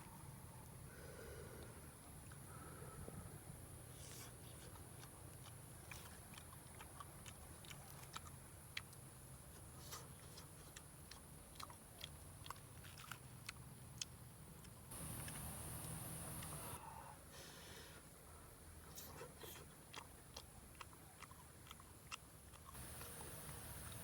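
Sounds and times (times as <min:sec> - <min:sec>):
person chewing crunchy food: 0:04.0 - 0:15.5, 0:19.1 - 0:24.0.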